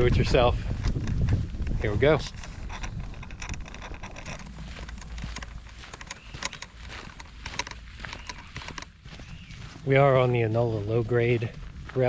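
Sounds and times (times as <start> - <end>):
low steady rumble: 0.0 - 9.0
footsteps on trail: 0.0 - 12.0.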